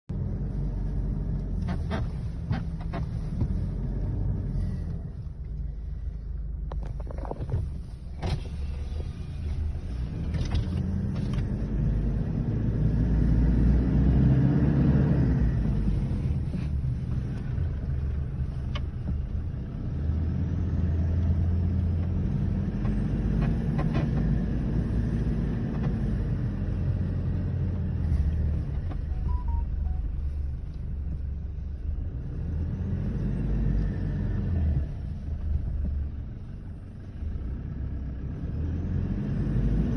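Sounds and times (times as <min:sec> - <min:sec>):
off-road vehicle engine revving: 0:09.8 - 0:18.4, 0:19.0 - 0:28.9, 0:32.0 - 0:36.3, 0:37.2 - 0:39.9.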